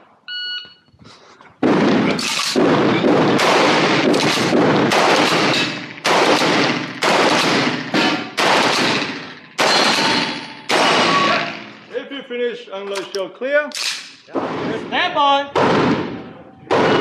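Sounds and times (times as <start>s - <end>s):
shotgun shots echoing: 1.6s - 11.9s, 15.5s - 17.0s.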